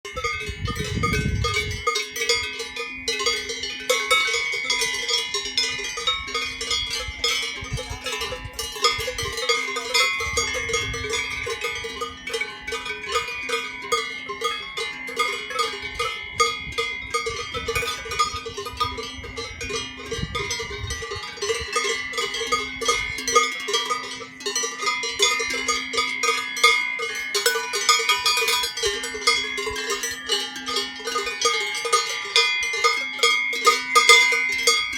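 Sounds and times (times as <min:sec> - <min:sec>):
cowbells clanging: 0:00.0 - 0:34.9.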